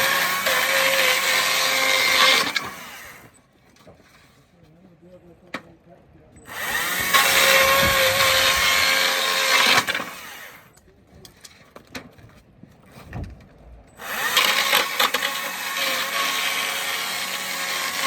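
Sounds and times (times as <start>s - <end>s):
sawmill sawing a log: 0.0s - 3.3s, 6.5s - 10.7s, 14.0s - 18.0s.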